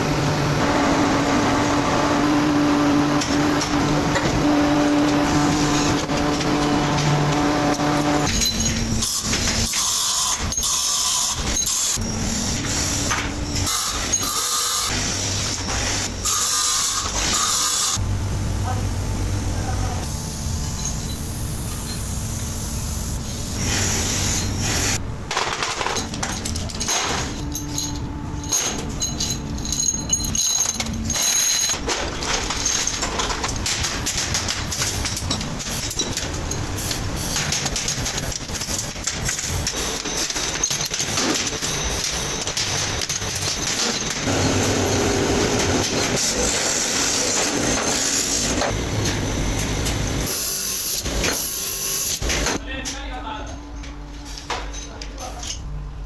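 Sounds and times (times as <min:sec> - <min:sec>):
factory machinery noise: 0:00.0 - 0:56.0
metal parts clattering: 0:05.1 - 0:11.8, 0:25.3 - 0:44.6.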